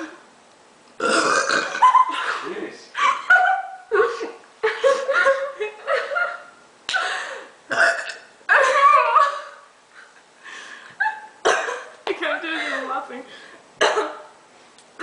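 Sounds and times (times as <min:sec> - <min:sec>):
woman burping: 0:01.0 - 0:02.0, 0:07.7 - 0:08.3, 0:11.4 - 0:12.0.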